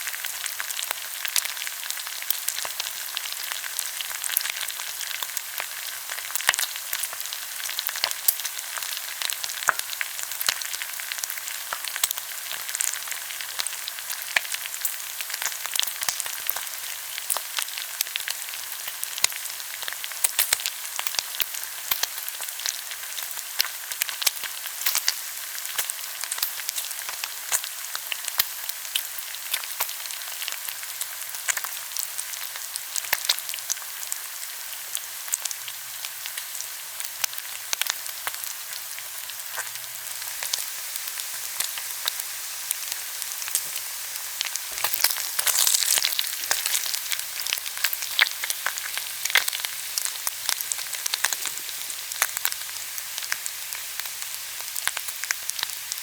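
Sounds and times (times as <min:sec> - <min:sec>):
food sizzling in a frying pan: 0:00.0 - 0:56.0
crackling spits and pops: 0:43.3 - 0:49.5.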